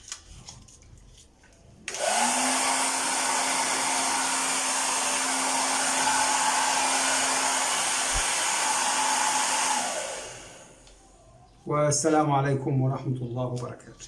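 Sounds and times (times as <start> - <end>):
hair dryer running: 1.9 - 11.0.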